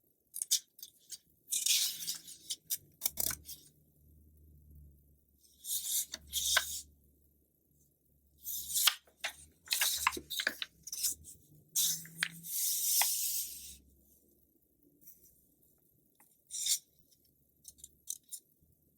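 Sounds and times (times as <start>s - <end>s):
magazine pages rustling: 8.7s - 11.2s.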